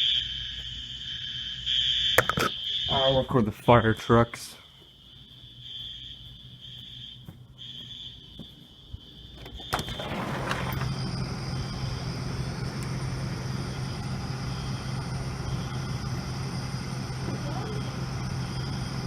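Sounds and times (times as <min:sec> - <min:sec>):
faint high steady tone: 0:00.0 - 0:19.0
fire truck engine humming: 0:09.4 - 0:19.0.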